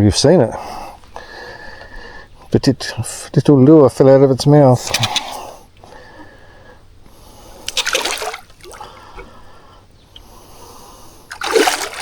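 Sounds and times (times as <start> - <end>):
water splashing: 7.6 - 9.4, 11.3 - 12.0.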